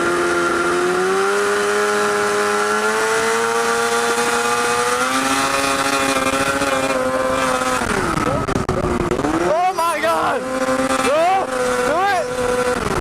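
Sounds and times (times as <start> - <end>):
two-stroke engine revving high: 0.0 - 13.0.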